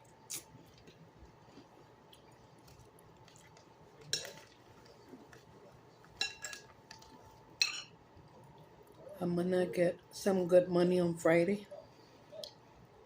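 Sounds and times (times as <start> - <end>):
spoon clinking against bowl: 6.2 - 6.7, 7.6 - 7.9.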